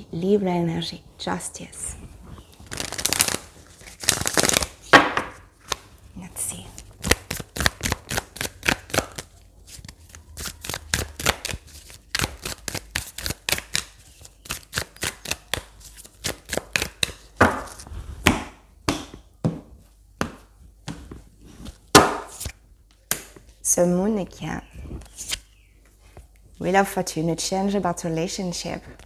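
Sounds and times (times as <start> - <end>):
cards being shuffled: 2.4 - 5.9, 6.5 - 17.9, 21.6 - 22.6, 25.0 - 25.5.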